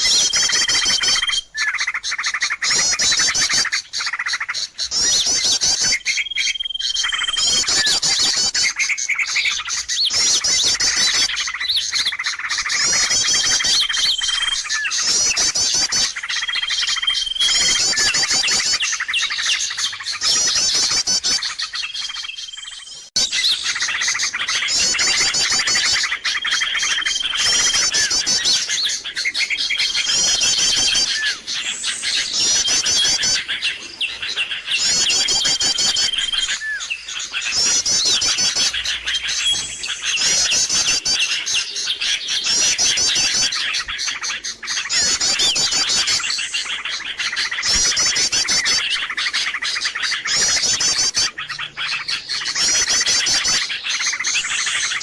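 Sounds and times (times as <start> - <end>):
held whistled bird note: 0.0 - 2.0, 4.8 - 12.2, 12.8 - 44.0
small birds chirping: 0.0 - 55.0.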